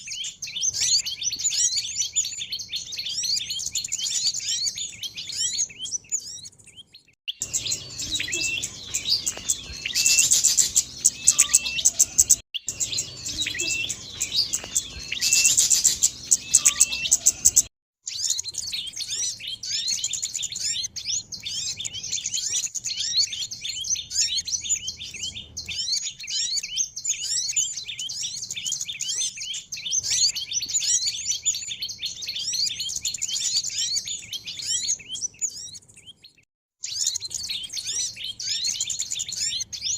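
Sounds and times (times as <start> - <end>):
songbirds chirping: 0.0 - 39.9.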